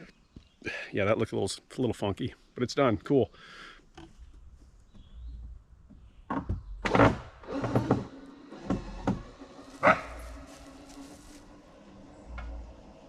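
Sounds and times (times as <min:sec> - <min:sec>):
sharp knocks and thuds: 0:04.0 - 0:09.3.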